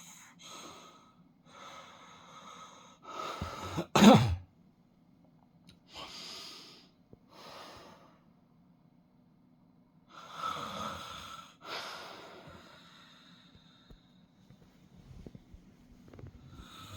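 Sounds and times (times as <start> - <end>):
man snoring: 10.2 - 11.6.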